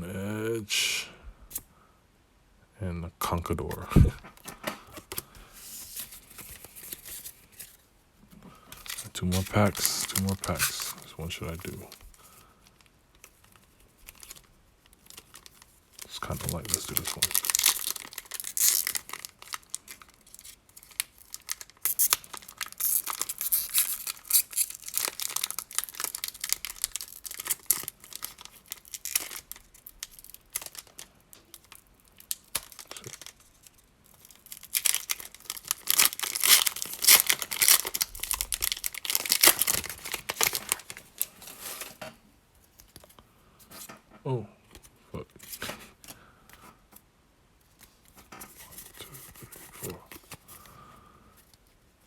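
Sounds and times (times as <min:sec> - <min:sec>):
foil wrapper tearing and crinkling: 0:08.8 - 0:41.9.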